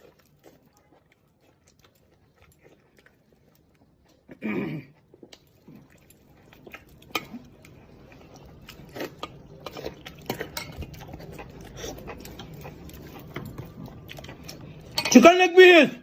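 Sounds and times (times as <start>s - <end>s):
dishes and cutlery clinking: 6.0s - 7.5s, 8.8s - 11.5s, 14.8s - 15.3s.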